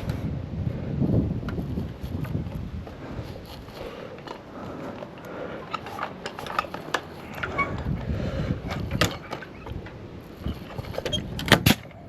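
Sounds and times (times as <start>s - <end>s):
timber clattering and knocking: 3.4s - 11.9s.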